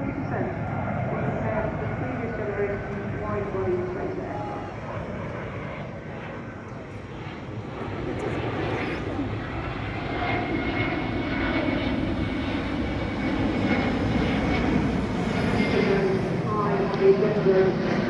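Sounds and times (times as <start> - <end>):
aircraft engine running: 0.0 - 18.0
faint high whine: 6.6 - 18.0.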